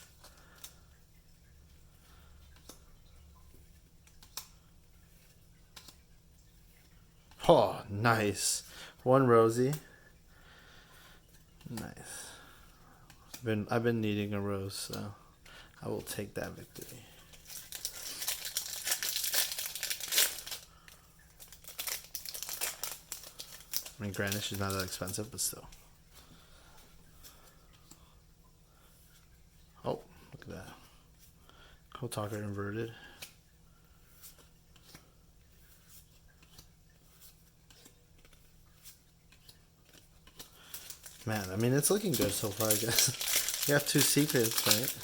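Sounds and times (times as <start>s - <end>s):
trading cards ticking and rustling: 0.0s - 7.6s, 10.9s - 28.1s, 34.1s - 45.0s
foil wrapper crinkling: 16.8s - 25.5s, 39.4s - 45.0s.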